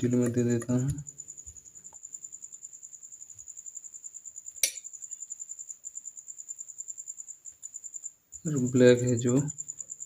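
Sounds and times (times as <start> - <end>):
cricket chirping: 0.0 - 10.0
sharp click: 4.6 - 4.9.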